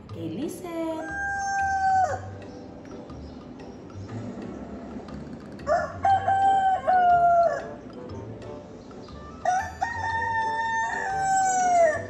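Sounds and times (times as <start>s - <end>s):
rooster crowing: 1.0s - 2.3s, 5.7s - 7.8s, 9.4s - 12.0s.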